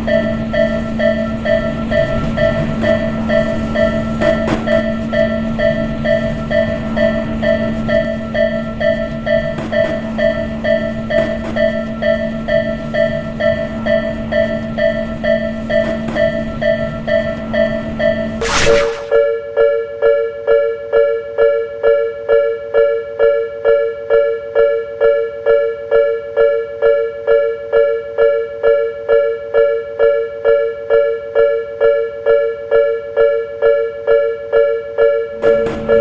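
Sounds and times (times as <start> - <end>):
level-crossing warning bell: 0.0 - 18.3.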